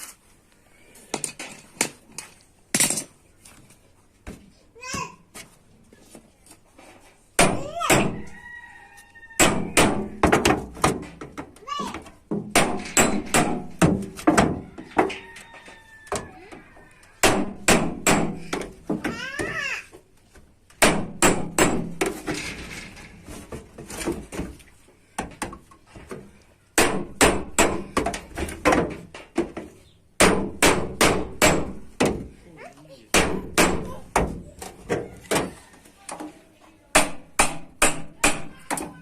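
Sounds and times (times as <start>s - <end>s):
hammer beating sheet metal: 12.4s - 14.0s, 17.2s - 18.6s, 20.8s - 22.2s, 30.2s - 32.2s, 37.0s - 38.6s.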